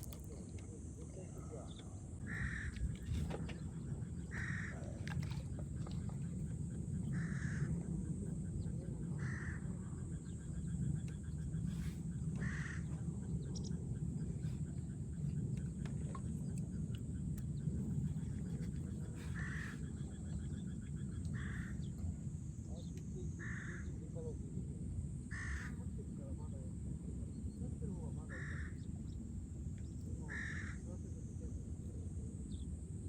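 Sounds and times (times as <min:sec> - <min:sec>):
steady low rumble: 0:00.0 - 0:33.0
crow cawing: 0:02.2 - 0:02.9, 0:04.3 - 0:05.0, 0:07.1 - 0:07.8, 0:09.2 - 0:09.8, 0:12.4 - 0:13.0, 0:19.3 - 0:20.1, 0:21.3 - 0:21.9, 0:23.4 - 0:24.0, 0:25.3 - 0:25.8, 0:28.3 - 0:28.8, 0:30.3 - 0:30.9.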